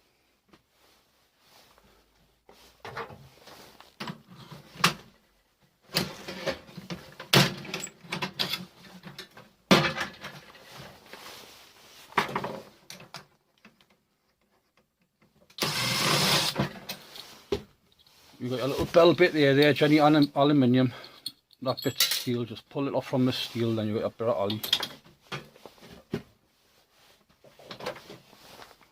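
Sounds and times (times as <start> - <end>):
metal parts clattering and scraping: 6.0 - 11.0, 16.6 - 22.5, 24.4 - 25.8.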